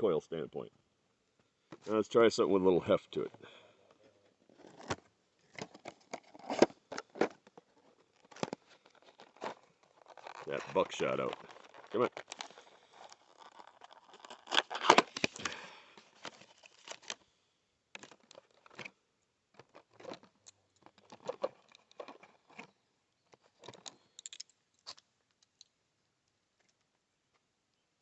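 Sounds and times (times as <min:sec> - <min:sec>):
cardboard rustling and crinkling: 0:04.1 - 0:17.2, 0:18.0 - 0:18.9, 0:19.5 - 0:23.8
shotgun shells clicking: 0:23.7 - 0:25.7.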